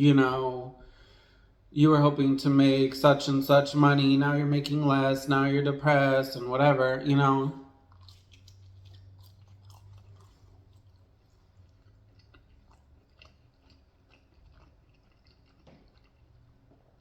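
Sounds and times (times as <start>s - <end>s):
person chewing: 7.8s - 17.0s
wet mouth clicks: 7.9s - 16.5s.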